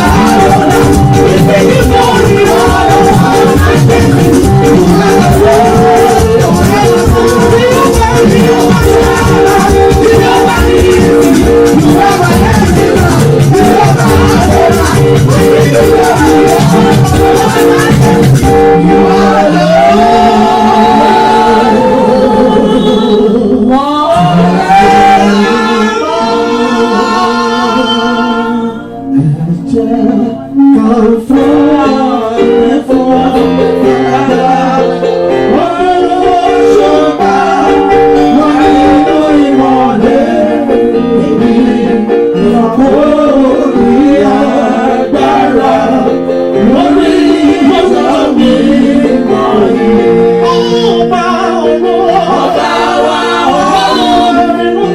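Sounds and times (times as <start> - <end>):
sustained keyboard: 0.0 - 22.2
gospel singing: 0.0 - 54.9.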